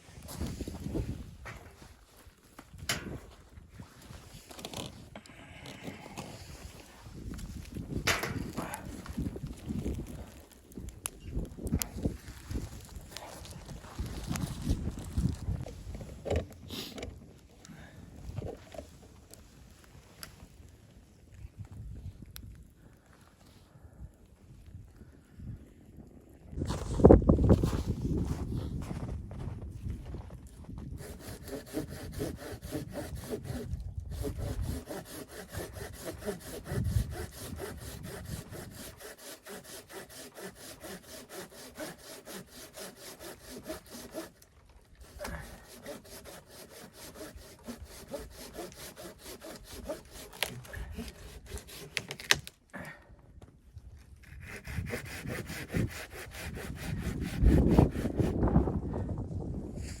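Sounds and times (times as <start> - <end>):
hand saw cutting wood: 30.9 - 52.5, 54.2 - 58.4.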